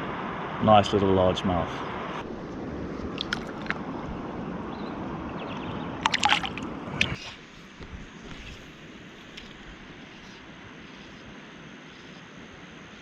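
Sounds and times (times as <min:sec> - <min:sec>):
water sloshing against kayak: 0:02.3 - 0:04.1, 0:06.0 - 0:10.0
sharp splashes: 0:03.1 - 0:03.9, 0:06.0 - 0:07.2.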